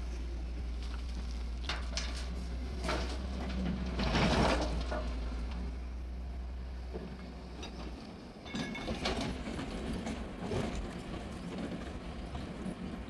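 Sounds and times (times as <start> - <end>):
excavator engine humming: 0.0 - 8.4.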